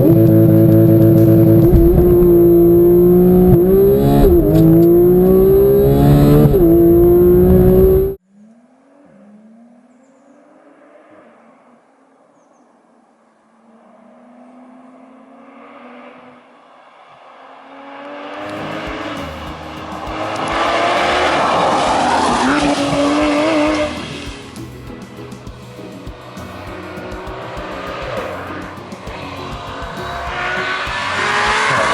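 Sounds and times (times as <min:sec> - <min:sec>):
car engine accelerating: 0:00.0 - 0:08.2, 0:13.7 - 0:31.9
tyre noise: 0:00.0 - 0:08.2, 0:18.4 - 0:31.9
wind noise: 0:00.0 - 0:08.2.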